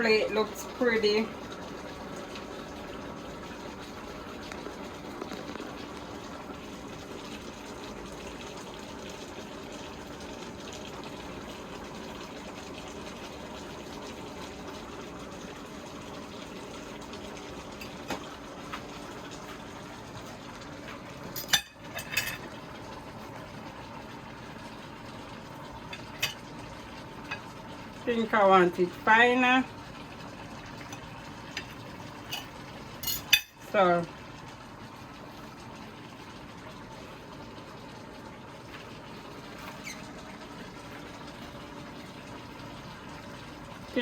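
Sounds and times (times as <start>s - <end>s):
pot boiling and bubbling: 0.0s - 44.0s.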